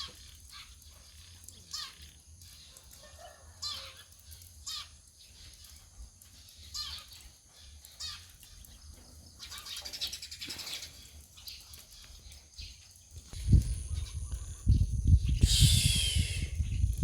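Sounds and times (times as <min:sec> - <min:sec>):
birds chirping: 0:03.7 - 0:17.0.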